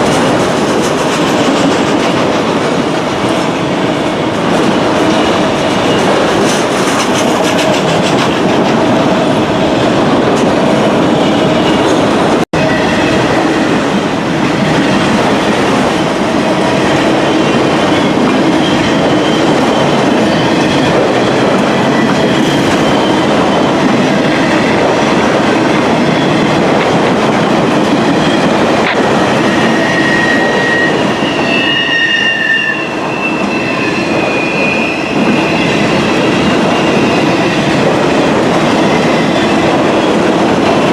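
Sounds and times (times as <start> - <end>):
freight train cars rumbling: 0.0 - 40.9
high wheel squeal: 21.8 - 24.6, 29.2 - 37.5.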